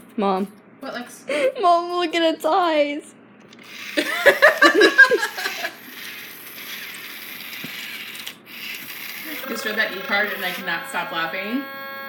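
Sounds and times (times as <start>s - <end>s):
loud giggling: 4.0s - 5.8s.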